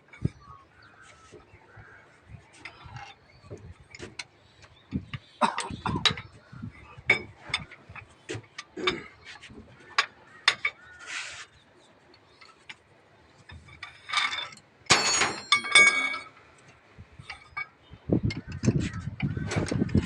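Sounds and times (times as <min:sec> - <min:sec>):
metal parts knocking and clinking: 0:13.4 - 0:16.4
ringing metallic clatter: 0:13.5 - 0:16.4.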